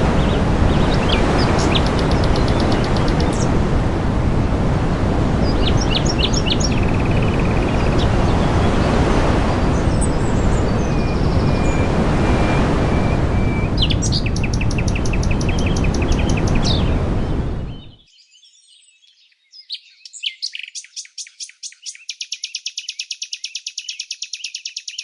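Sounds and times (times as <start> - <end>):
small songbirds chirping: 0.0 - 3.5, 5.4 - 25.0
loud steady rushing noise: 0.0 - 17.8.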